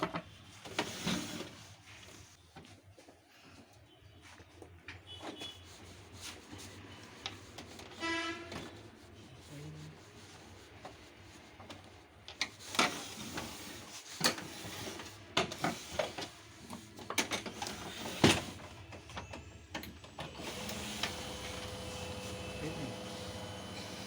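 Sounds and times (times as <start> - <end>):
printer motor hum: 20.2 - 24.0.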